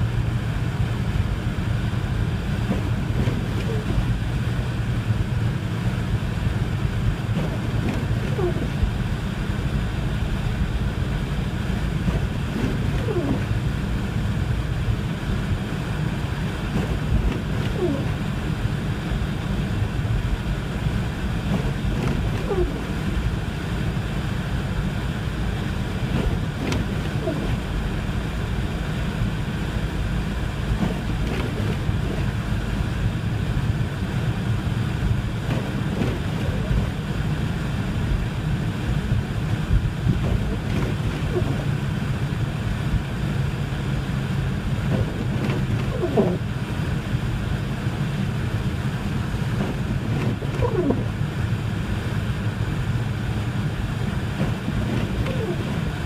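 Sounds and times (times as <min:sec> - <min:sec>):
wind buffeting microphone: 0:00.0 - 0:56.0
faint squeaks: 0:02.6 - 0:04.1, 0:07.4 - 0:08.8, 0:12.0 - 0:13.6, 0:16.8 - 0:18.2, 0:21.5 - 0:23.0, 0:26.0 - 0:27.7, 0:35.4 - 0:36.9, 0:40.1 - 0:41.7, 0:44.9 - 0:46.4, 0:49.6 - 0:51.2, 0:54.4 - 0:56.0.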